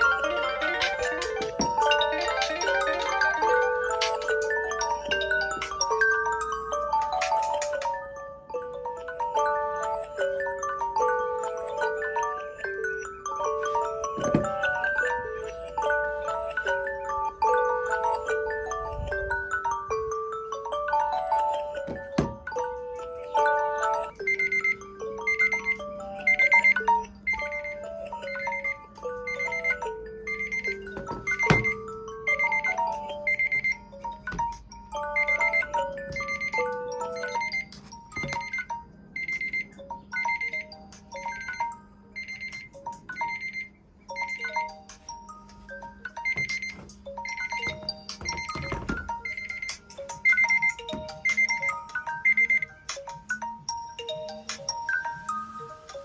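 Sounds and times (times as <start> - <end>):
marimba-like ringtone melodies: 0.0 - 56.0.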